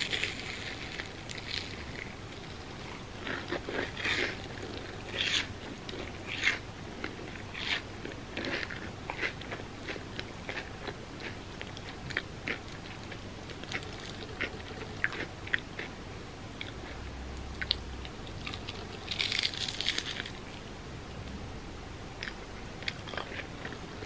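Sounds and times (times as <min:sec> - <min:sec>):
crisp crunching: 0:18.3 - 0:20.7.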